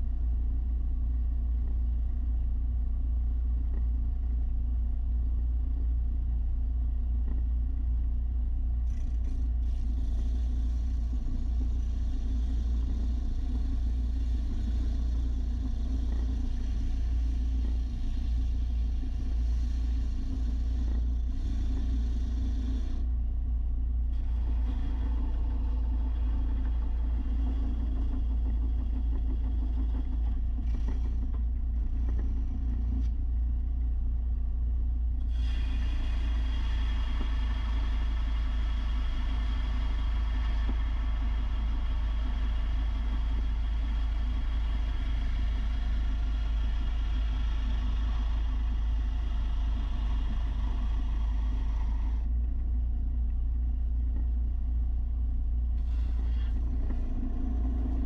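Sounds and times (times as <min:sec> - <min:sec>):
belt sander running: 0:35.4 - 0:52.2.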